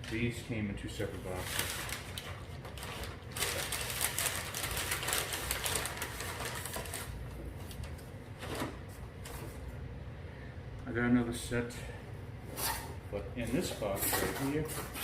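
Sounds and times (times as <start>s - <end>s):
cardboard packaging rustling and clicking: 1.3s - 9.4s.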